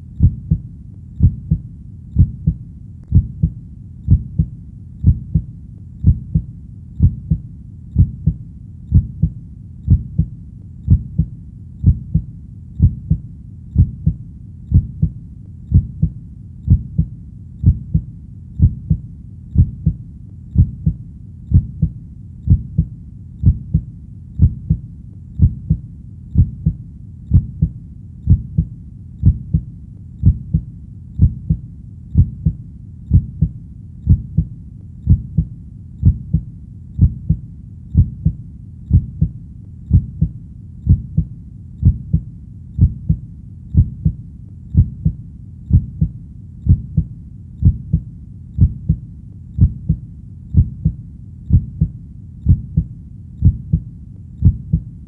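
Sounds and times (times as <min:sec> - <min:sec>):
heartbeat thumps: 0:00.0 - 0:54.9.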